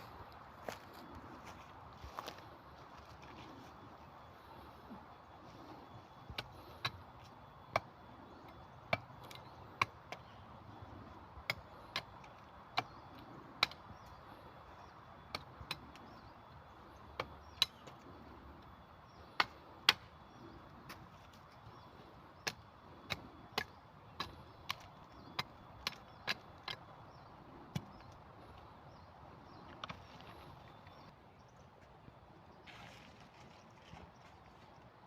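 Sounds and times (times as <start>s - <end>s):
tent stakes being hammered: 11.4s - 14.0s, 19.3s - 20.2s.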